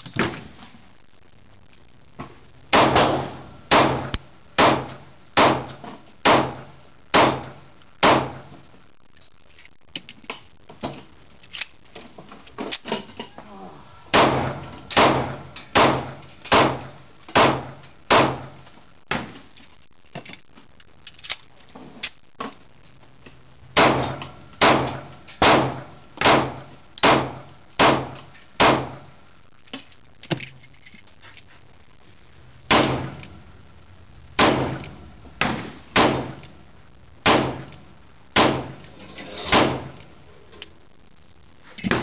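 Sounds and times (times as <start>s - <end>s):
handgun shots: 14.1s - 16.8s.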